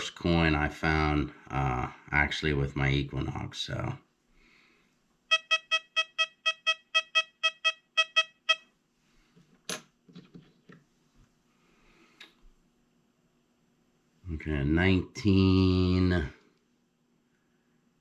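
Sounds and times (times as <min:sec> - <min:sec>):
metal detector short beeps: 0:05.3 - 0:08.7.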